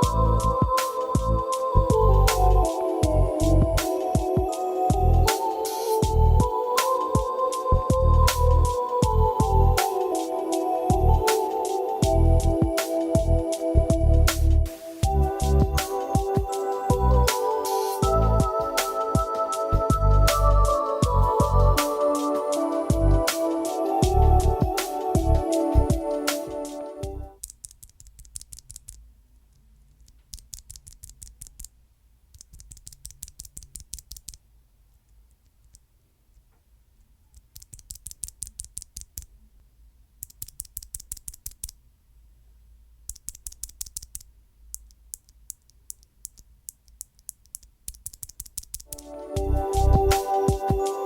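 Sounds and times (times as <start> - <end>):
background music: 0.0 - 27.4, 48.9 - 51.0
mechanical keyboard typing: 27.4 - 29.0, 30.0 - 31.7, 32.4 - 34.4, 37.4 - 39.3, 40.2 - 41.8, 43.1 - 49.1.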